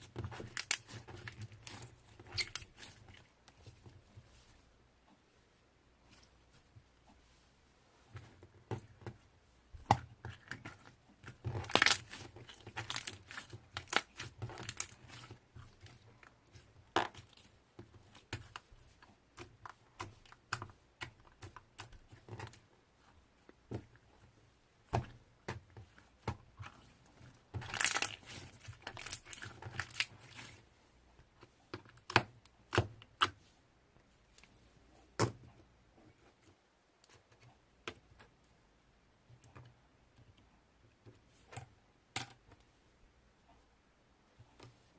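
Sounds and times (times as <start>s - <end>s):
slime popping and crackling: 10.4s - 15.3s, 27.5s - 30.5s.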